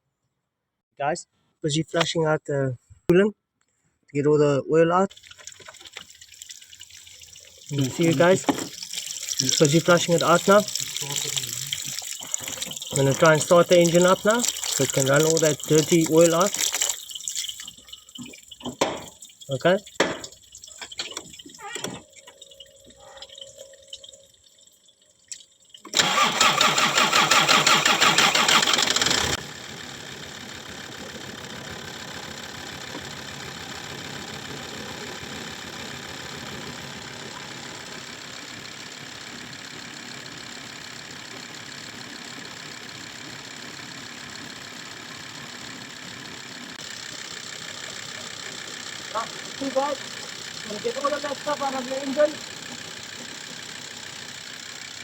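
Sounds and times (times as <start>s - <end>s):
diesel engine cranking: 5.1s - 24.1s, 25.8s - 55.0s
diesel engine idling: 7.5s - 16.8s, 26.0s - 55.0s.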